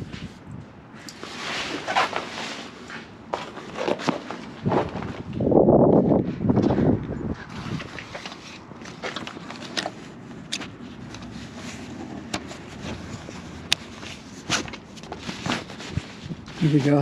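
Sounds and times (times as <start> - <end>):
rustle of canvas and gear: 1.0 - 17.0
clicks and knocks of buckles: 8.1 - 11.3.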